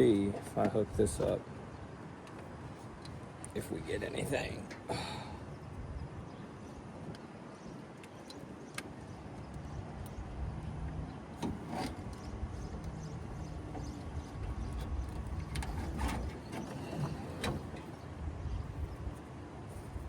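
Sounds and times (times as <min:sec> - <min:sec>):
low steady rumble: 0:09.2 - 0:20.0.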